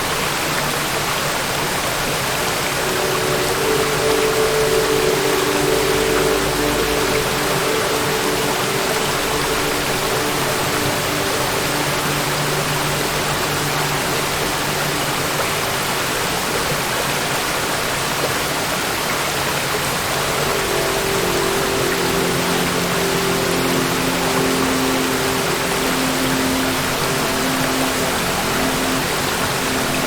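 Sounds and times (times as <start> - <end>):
waterfall rushing: 0.0 - 30.0
faint low tones: 2.0 - 16.6.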